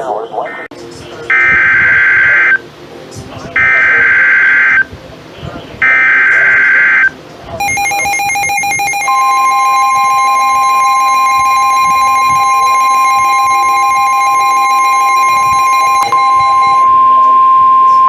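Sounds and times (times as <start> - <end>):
higher steady electronic tone: 1.2 - 2.8, 3.6 - 4.9, 5.8 - 17.2
steady electronic alert tone: 1.3 - 2.6, 3.6 - 4.9, 5.8 - 16.8.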